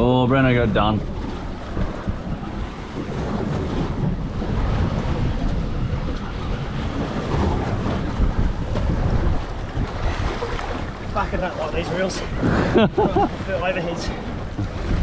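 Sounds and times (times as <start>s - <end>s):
water sloshing against boat: 0.0s - 15.0s
wind buffeting microphone: 0.0s - 15.0s.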